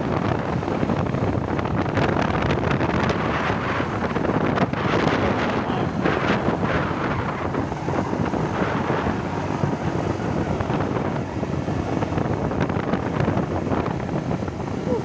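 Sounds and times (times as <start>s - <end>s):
vehicle and road noise: 0.0s - 15.0s
wind buffeting microphone: 0.0s - 15.0s.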